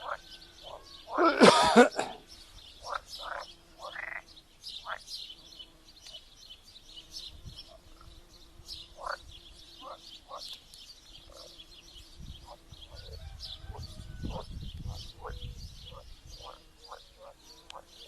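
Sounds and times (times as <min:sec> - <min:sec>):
frogs croaking: 0:00.0 - 0:02.1, 0:02.8 - 0:05.1, 0:08.9 - 0:10.5, 0:14.3 - 0:18.0
birds chirping: 0:00.0 - 0:18.0
faint frog drone: 0:08.9 - 0:10.4.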